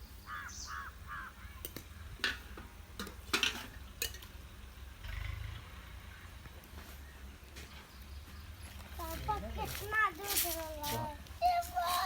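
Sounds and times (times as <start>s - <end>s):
metal utensil clinking on pot: 3.0s - 4.3s.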